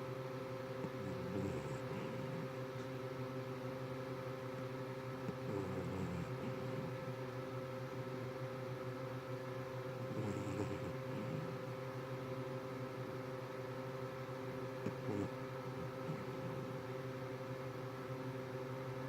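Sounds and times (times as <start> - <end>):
steady electrical hum: 0.0 - 19.0
person snoring: 0.8 - 2.6, 5.2 - 7.1, 10.0 - 11.7, 14.8 - 16.8.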